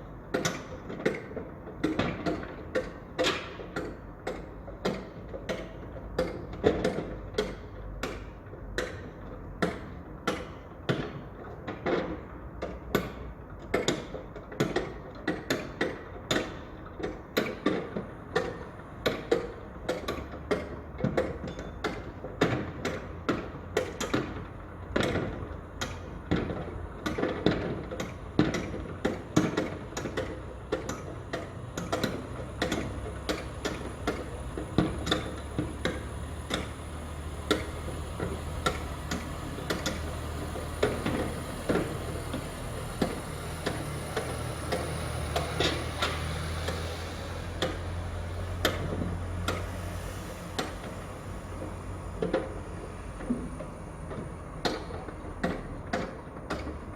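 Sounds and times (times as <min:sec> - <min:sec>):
low machinery hum: 0:24.8 - 0:56.9.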